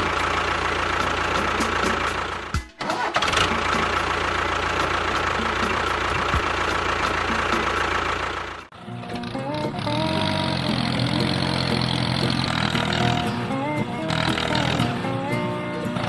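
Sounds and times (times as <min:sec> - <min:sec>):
motor running with high whine: 0:09.1 - 0:16.0.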